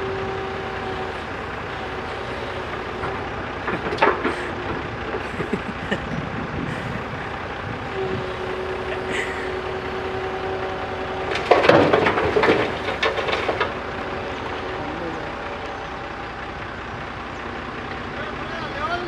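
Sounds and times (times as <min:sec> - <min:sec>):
diesel engine under load: 0:00.0 - 0:19.0
clattering and crunching: 0:01.9 - 0:05.4, 0:11.1 - 0:14.9.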